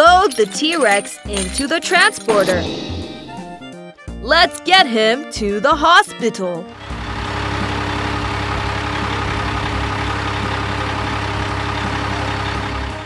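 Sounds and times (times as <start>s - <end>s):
heavy truck engine running: 6.7s - 13.0s.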